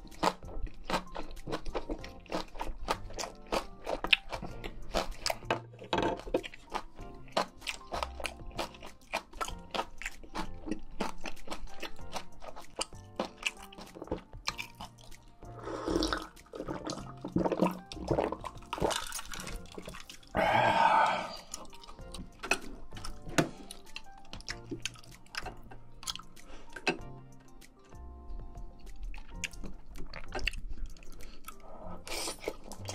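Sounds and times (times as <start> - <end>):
wet chewing clicks: 0.0 - 5.6, 6.2 - 20.4, 21.0 - 28.0, 28.7 - 32.9
soft background music: 0.0 - 32.9
noodle slurping: 6.4 - 25.2, 30.7 - 32.9.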